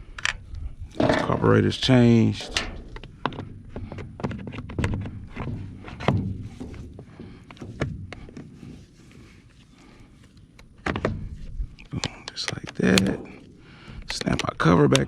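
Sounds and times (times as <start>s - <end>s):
plastic parts clicking and knocking: 1.0s - 1.6s, 2.3s - 8.8s, 10.2s - 15.0s.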